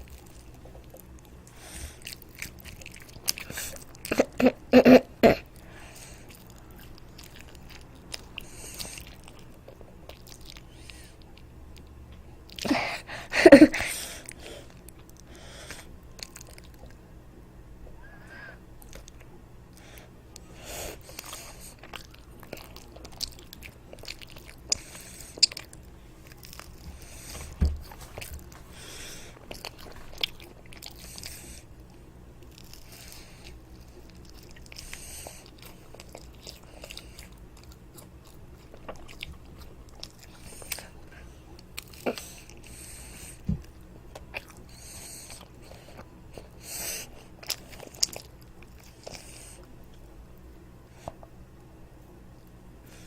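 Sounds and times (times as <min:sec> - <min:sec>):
soft chewing: 0:00.0 - 0:04.6, 0:05.4 - 0:12.7, 0:14.2 - 0:17.0, 0:17.8 - 0:53.0
child crunching toast: 0:21.0 - 0:31.6.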